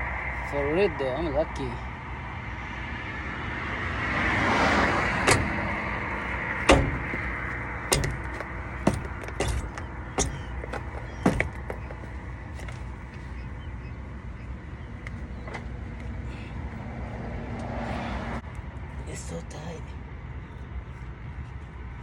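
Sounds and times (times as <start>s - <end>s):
vehicle passing by: 1.5s - 9.0s, 15.1s - 18.5s
sharp knocks and clicks: 5.2s - 6.0s, 6.6s - 12.8s.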